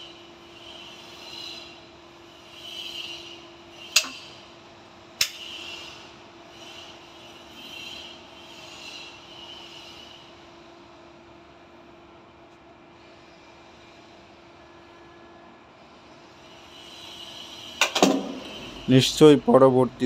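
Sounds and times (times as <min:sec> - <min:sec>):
pulsing hiss: 0:00.0 - 0:04.6, 0:05.4 - 0:11.0, 0:15.8 - 0:19.8
steady hum: 0:00.0 - 0:20.0
sharp knocks: 0:17.8 - 0:18.5.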